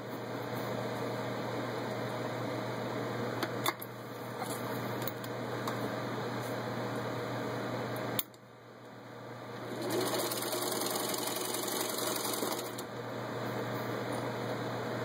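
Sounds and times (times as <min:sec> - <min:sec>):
sewing machine stitching: 0:09.7 - 0:12.8.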